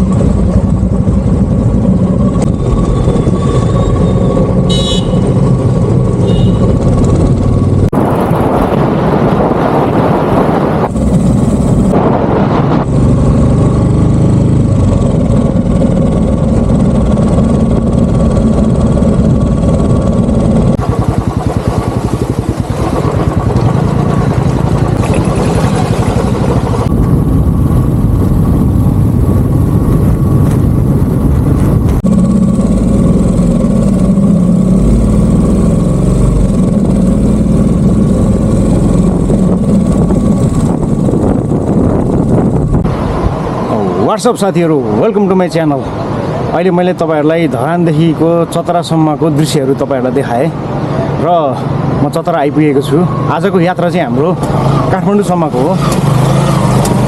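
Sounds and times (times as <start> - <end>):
motorcycle engine running: 0.0 - 42.9, 53.2 - 57.0
wind noise on microphone: 0.0 - 43.9.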